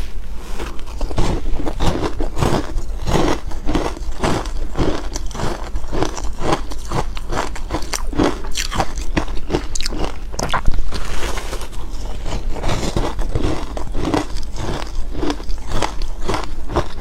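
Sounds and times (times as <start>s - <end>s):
ice being chewed: 0.4s - 17.0s.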